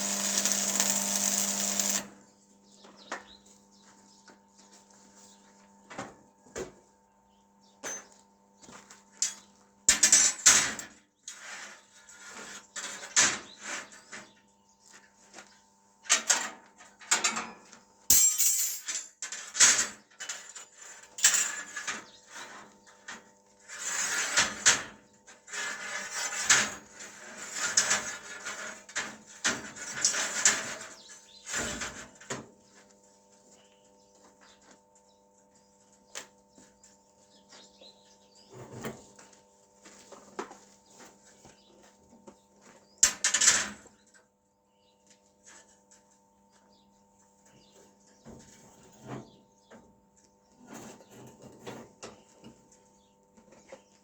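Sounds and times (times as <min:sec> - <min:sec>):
metal parts clanking and scraping: 0:18.1 - 0:21.9.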